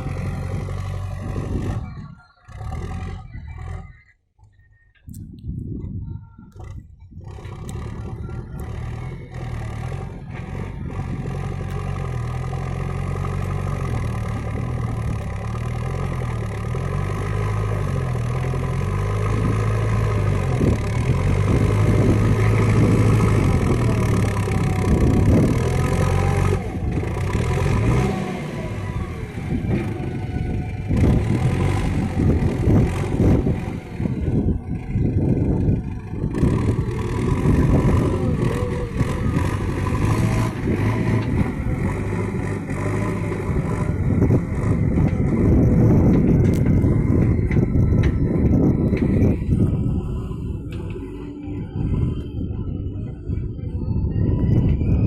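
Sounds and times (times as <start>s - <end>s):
diesel engine revving: 0.0s - 4.2s, 6.5s - 55.0s
machinery knocks and clatter: 35.5s - 49.5s.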